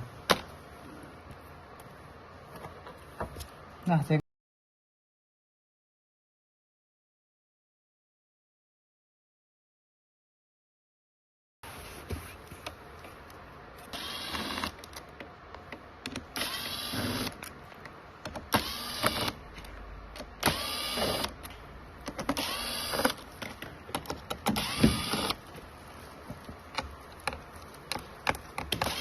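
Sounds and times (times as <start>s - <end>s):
small electric motor whirring: 13.9s - 14.8s, 16.4s - 17.4s, 18.5s - 19.4s, 20.4s - 21.3s, 22.4s - 23.2s, 24.6s - 25.4s.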